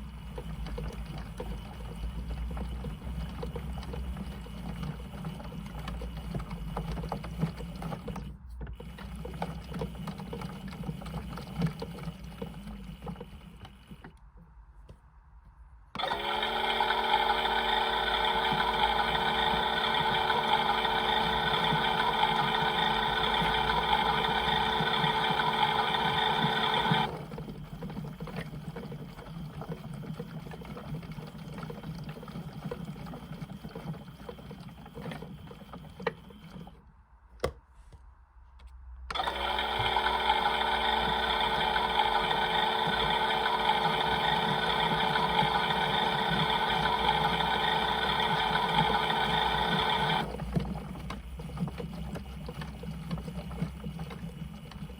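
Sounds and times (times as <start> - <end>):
toy washing machine motor whine: 0.0 - 14.1, 16.0 - 36.8, 39.1 - 54.9.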